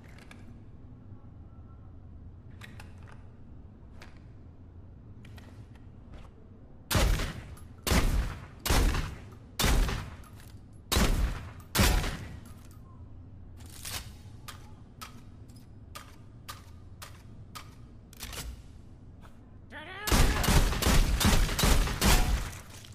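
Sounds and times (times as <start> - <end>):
light mechanical clicks: 13.6 - 18.6
rapid volley of shots: 20.1 - 22.5
shotgun shots echoing: 20.1 - 22.6.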